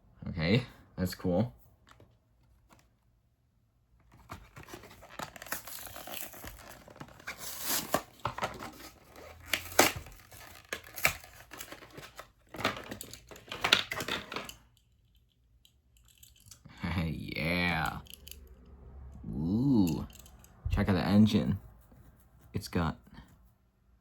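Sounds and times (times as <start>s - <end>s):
plastic and cardboard crinkling: 4.0s - 14.7s.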